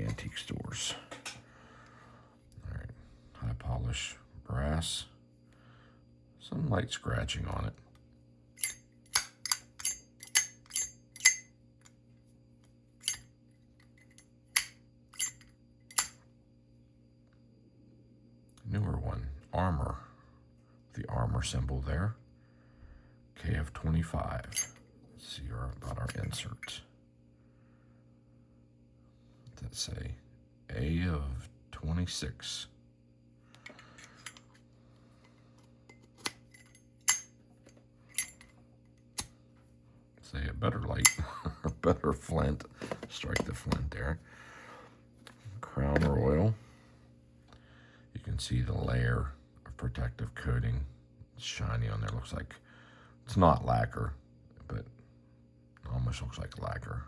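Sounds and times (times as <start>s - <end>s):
lighter lid clicking open and shut: 8.6s - 11.4s, 13.0s - 13.2s, 14.6s - 16.2s.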